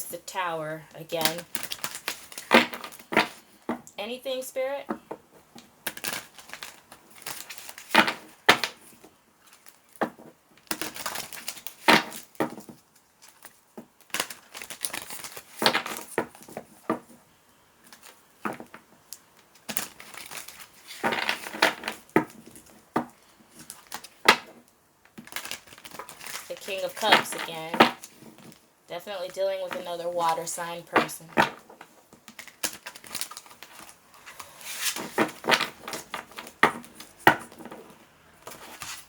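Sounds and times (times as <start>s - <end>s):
cards being shuffled: 25.2s - 28.6s, 29.2s - 39.0s.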